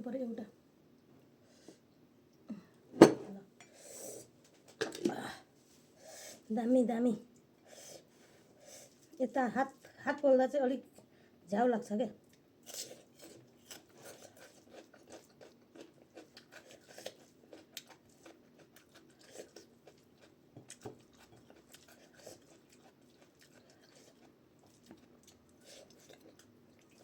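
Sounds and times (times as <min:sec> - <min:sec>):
faint chewing and mouth sounds: 0:12.2 - 0:27.0.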